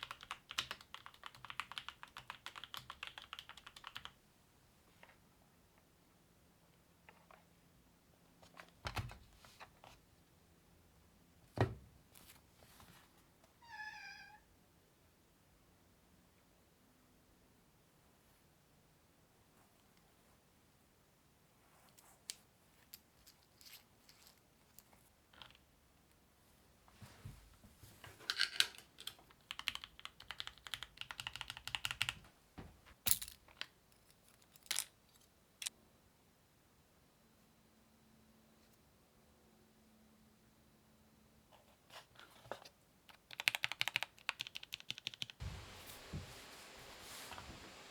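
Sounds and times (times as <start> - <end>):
mechanical keyboard typing: 0.0 - 4.2, 29.0 - 32.2, 43.1 - 45.4
thump: 11.6 - 11.9.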